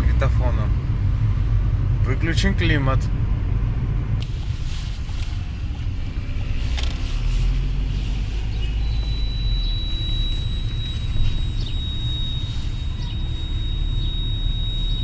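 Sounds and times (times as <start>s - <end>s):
low vehicle cabin rumble: 0.0s - 15.0s
thin high whistle: 8.4s - 15.0s.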